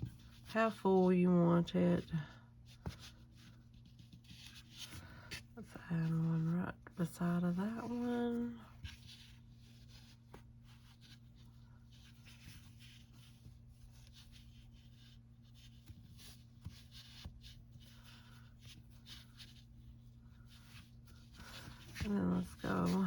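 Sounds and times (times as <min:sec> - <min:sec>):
steady low hum: 0:00.0 - 0:23.0
yarn rustling and scratching: 0:07.6 - 0:23.0.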